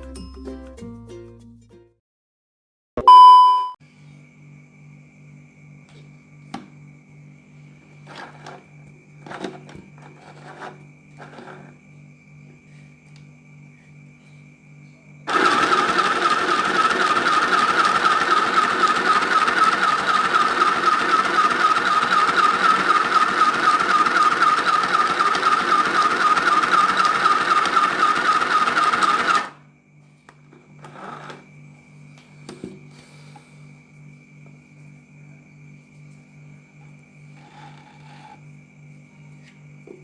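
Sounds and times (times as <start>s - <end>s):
sewing machine rattling: 15.3s - 29.6s, 30.8s - 31.4s.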